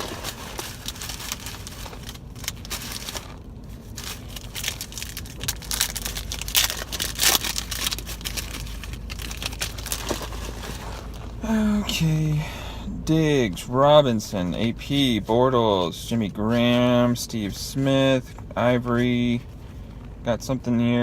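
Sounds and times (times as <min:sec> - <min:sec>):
wrapper crinkling and tearing: 0:00.0 - 0:11.4.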